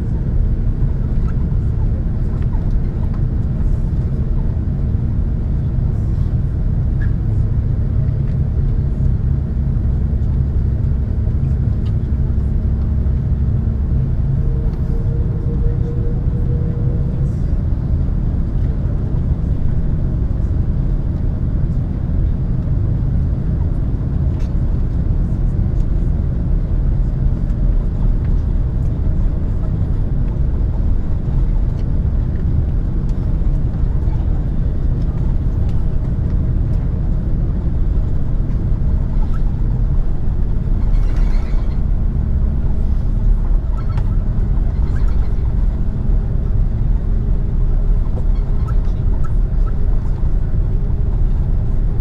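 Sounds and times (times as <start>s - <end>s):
airplane cabin rumble while taxiing: 0.0s - 52.0s.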